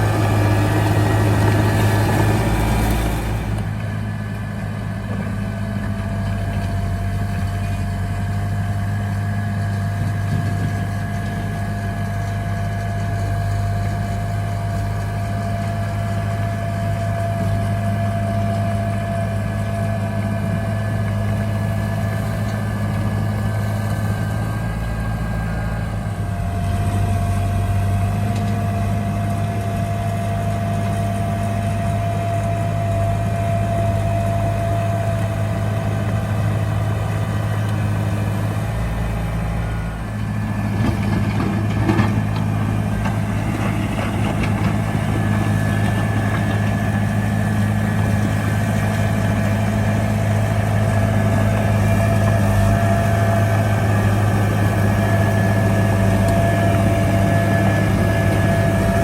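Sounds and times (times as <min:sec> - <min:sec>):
diesel engine running: 0:00.0 - 0:59.0
constant whine: 0:30.8 - 0:59.0.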